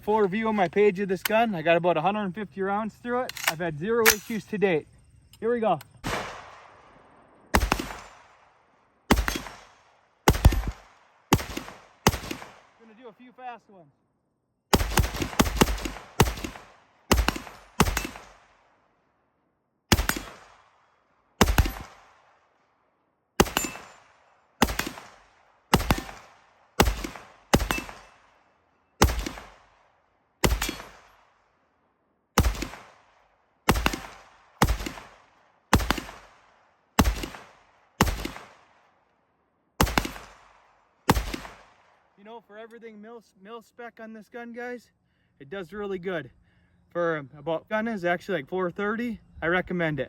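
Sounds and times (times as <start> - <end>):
rifle shots with echoing tail: 6.0 - 13.1, 14.7 - 18.9, 19.9 - 22.7, 23.4 - 31.5, 32.4 - 39.0, 39.8 - 42.2.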